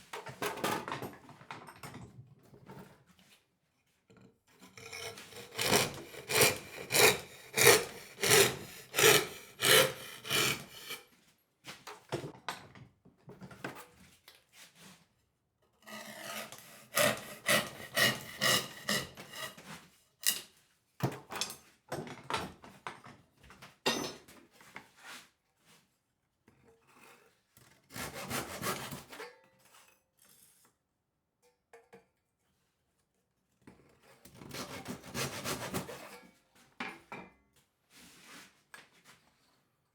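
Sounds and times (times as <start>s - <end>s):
hand tool stroking wood: 4.8s - 11.0s, 15.9s - 19.7s.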